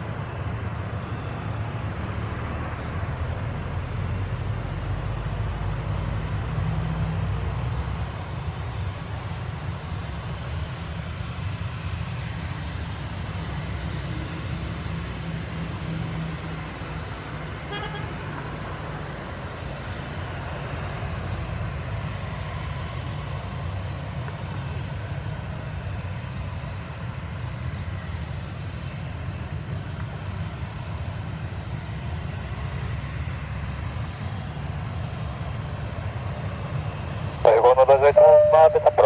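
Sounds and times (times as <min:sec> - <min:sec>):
jet engines idling: 0:16.4 - 0:39.0.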